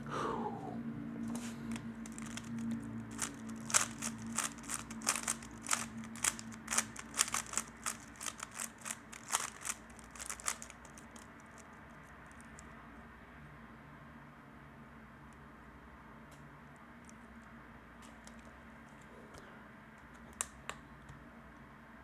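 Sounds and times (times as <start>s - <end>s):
puzzle cube turning clicks: 1.3s - 11.7s.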